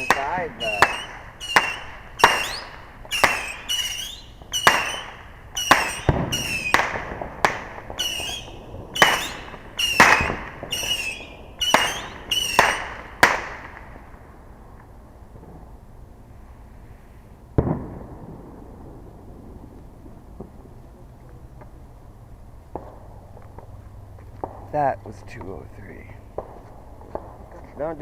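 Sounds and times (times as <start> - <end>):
fireworks high whistle: 0.0 - 13.8
fireworks bangs: 0.0 - 14.7, 17.6 - 21.4, 24.4 - 28.0.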